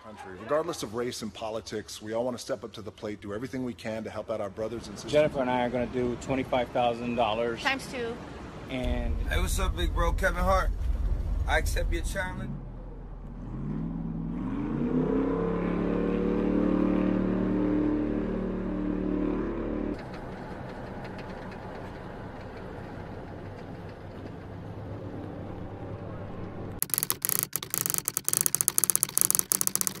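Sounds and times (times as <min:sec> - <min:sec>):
low steady hum: 0:08.7 - 0:14.4
vehicle engine revving: 0:08.8 - 0:21.6.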